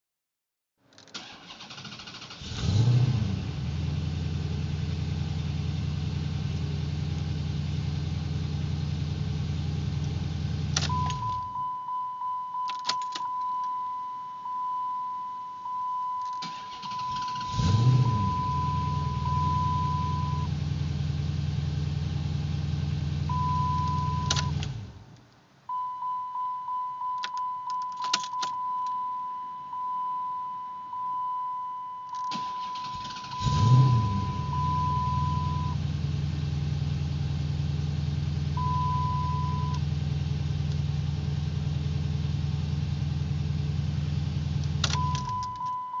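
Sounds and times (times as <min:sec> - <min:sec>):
engine cranking and starting: 0:01.0 - 0:03.4, 0:16.4 - 0:18.3, 0:32.2 - 0:34.6
car engine idling: 0:01.2 - 0:11.4, 0:16.4 - 0:25.1, 0:32.4 - 0:45.6
warning tone: 0:10.9 - 0:20.5, 0:44.9 - 0:46.0
keys jingling: 0:27.2 - 0:28.6.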